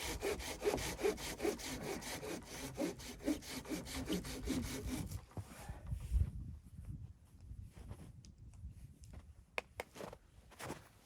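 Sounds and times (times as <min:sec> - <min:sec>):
hand saw cutting wood: 0:00.0 - 0:05.2.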